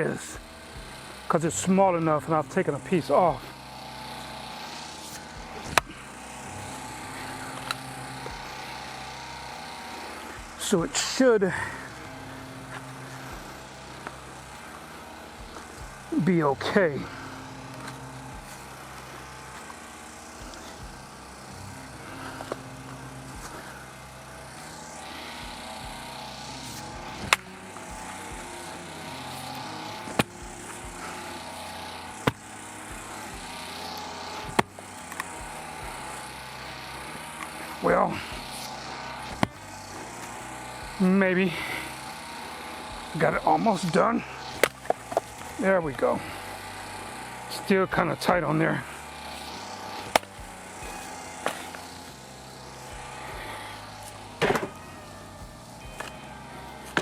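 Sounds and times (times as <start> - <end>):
steady low drone: 0.0 - 57.0
axe striking firewood: 5.1 - 5.9, 34.5 - 35.4, 50.1 - 50.4, 54.4 - 54.7.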